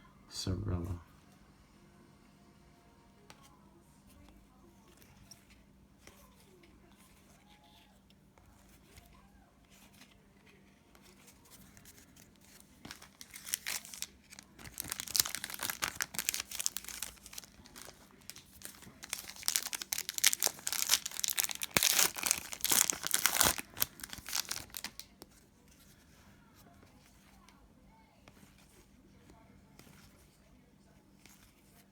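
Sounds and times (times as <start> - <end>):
foil wrapper tearing and crinkling: 11.8 - 25.2.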